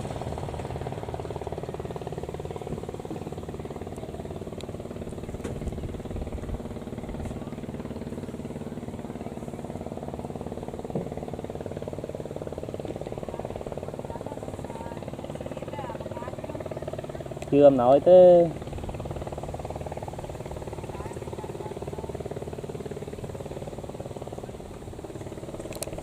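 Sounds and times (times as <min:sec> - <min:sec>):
diesel engine running: 0:00.0 - 0:26.0
faint clicks: 0:25.6 - 0:26.0.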